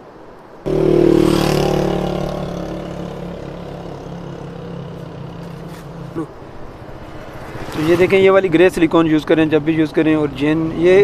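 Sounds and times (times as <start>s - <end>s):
vehicle engine running: 0.7s - 6.4s.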